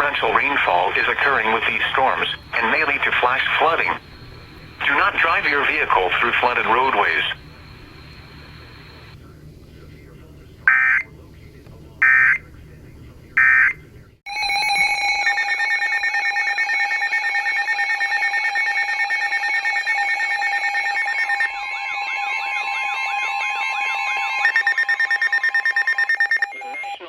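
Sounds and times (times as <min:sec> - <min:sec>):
pulsing electronic alarm tones: 0:00.0 - 0:09.2, 0:14.3 - 0:27.0
warbling siren-like tone: 0:14.3 - 0:27.0.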